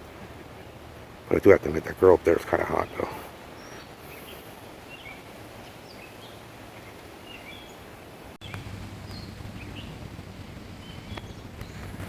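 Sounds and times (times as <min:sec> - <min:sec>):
small birds chirping: 0:00.4 - 0:12.0
low steady hum: 0:08.4 - 0:12.0.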